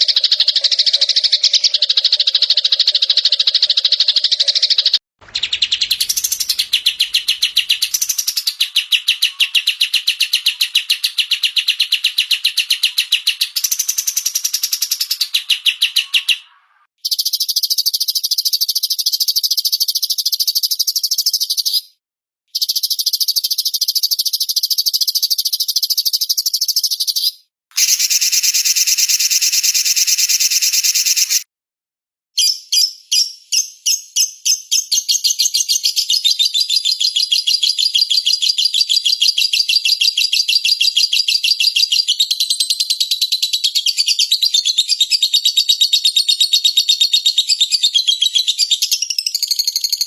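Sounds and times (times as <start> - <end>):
songbirds chirping rapidly: 0.0 - 17.5.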